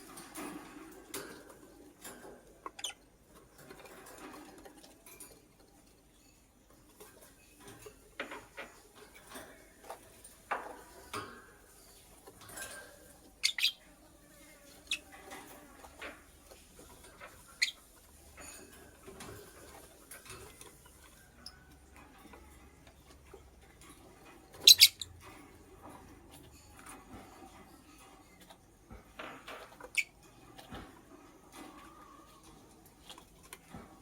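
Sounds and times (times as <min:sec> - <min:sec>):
faint scratching and ticking: 0:00.0 - 0:34.0
lovebird chirping: 0:13.4 - 0:13.9, 0:24.6 - 0:25.1.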